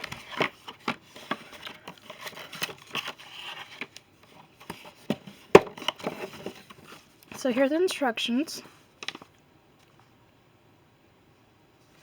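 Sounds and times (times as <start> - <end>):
packaging rustling: 0.0 - 7.4.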